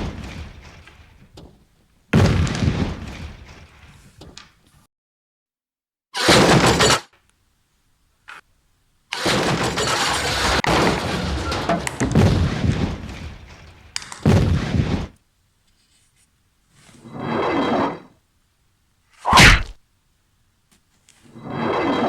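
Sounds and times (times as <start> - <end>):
sharp crack: 0.0 - 1.6, 9.1 - 15.2, 19.2 - 19.8
long crash: 9.2 - 15.1.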